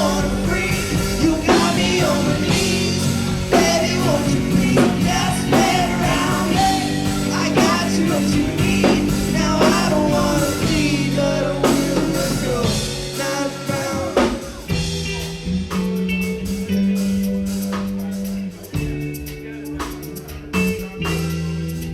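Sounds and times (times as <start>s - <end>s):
person singing: 0.0s - 14.8s
live rock band playing: 0.0s - 21.9s.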